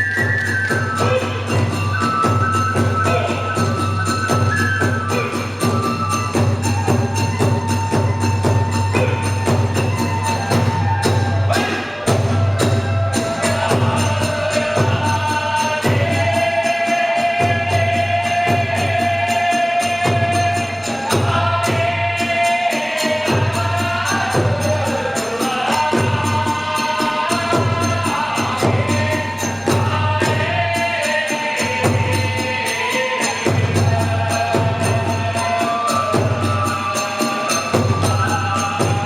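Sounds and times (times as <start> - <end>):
big drum beating: 5.6 - 16.5.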